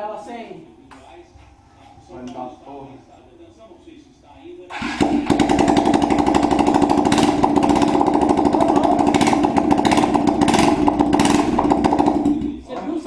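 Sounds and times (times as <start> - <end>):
exhaust pops: 4.7 - 12.7
motorcycle engine running loud: 4.7 - 12.7.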